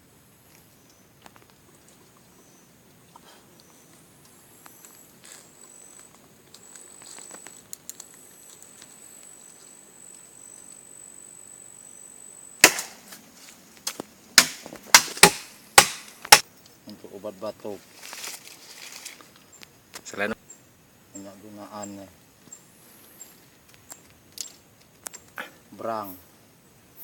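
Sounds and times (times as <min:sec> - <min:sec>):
quiet forest ambience: 0:00.0 - 0:27.0
blade chopping tree trunk: 0:12.6 - 0:13.2, 0:13.8 - 0:16.4.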